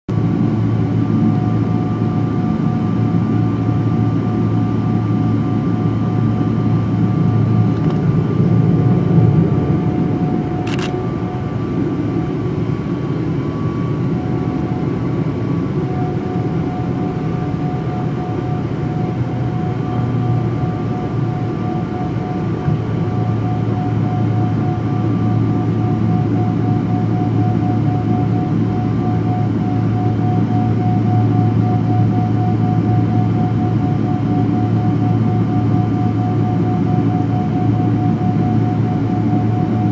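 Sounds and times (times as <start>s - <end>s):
jet engines running: 0.1s - 39.9s
sharp click: 10.6s - 11.0s.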